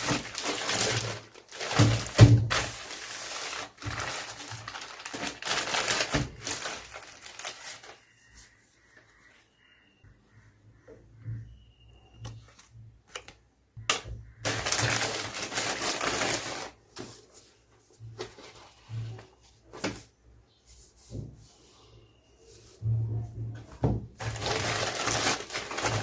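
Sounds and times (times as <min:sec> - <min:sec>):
packaging ripping: 0:00.0 - 0:08.0, 0:14.5 - 0:16.8, 0:24.2 - 0:26.0
packaging clicks and rustles: 0:00.0 - 0:08.1, 0:14.4 - 0:17.2, 0:24.2 - 0:26.0.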